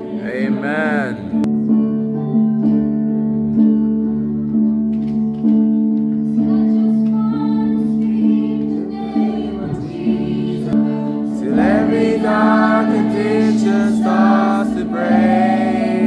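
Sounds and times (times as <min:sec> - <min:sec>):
faint singing: 0:00.0 - 0:01.5, 0:06.3 - 0:16.0
worship music chords: 0:00.0 - 0:02.0, 0:08.8 - 0:16.0.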